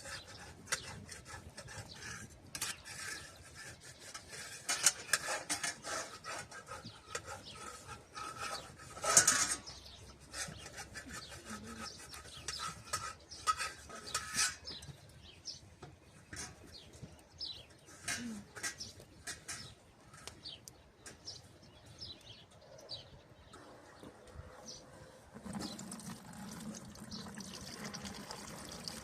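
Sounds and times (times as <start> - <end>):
rubbing or scraping: 0.0 - 21.4
small birds chirping: 0.0 - 29.0.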